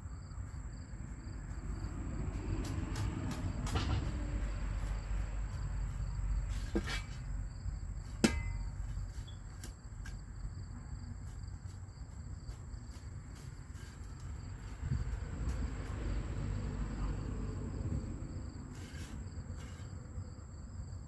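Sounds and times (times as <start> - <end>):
sharp ringing knocks: 8.2 - 8.8.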